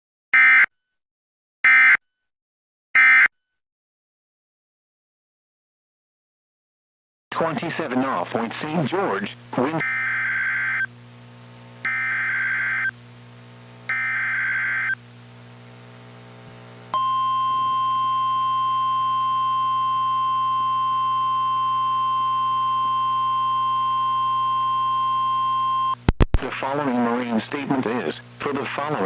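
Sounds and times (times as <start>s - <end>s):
steady alarm tone: 13.9s - 15.0s, 16.9s - 26.4s.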